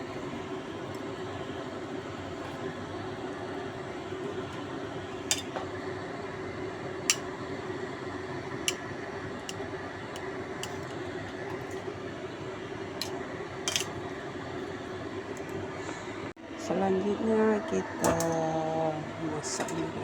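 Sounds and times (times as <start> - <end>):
utensils clinking against dishes: 13.0 - 14.0.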